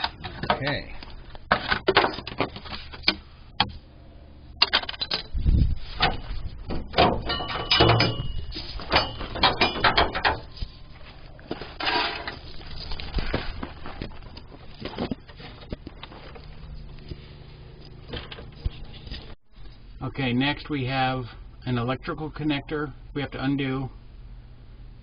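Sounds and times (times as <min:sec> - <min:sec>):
hand tools clicking and scraping: 0:04.6 - 0:19.4.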